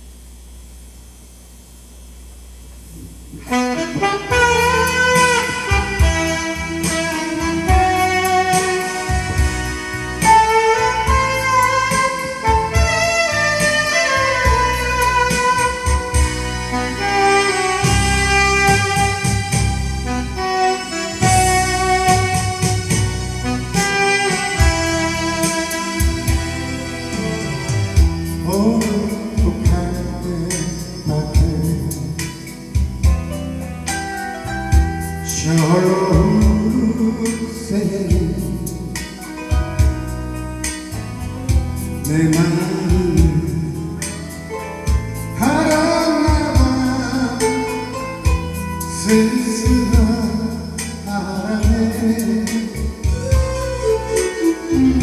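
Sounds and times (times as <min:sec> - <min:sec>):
keyboard bass and drum backing: 0:00.0 - 0:55.0
saxophone ballad melody: 0:02.8 - 0:55.0
drum beat: 0:03.3 - 0:16.6, 0:21.1 - 0:30.1, 0:31.4 - 0:33.4, 0:38.1 - 0:40.8.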